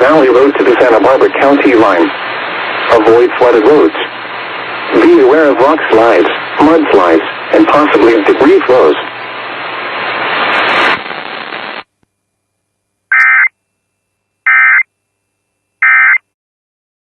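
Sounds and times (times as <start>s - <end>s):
radio static hiss with hum: 0.0s - 12.0s.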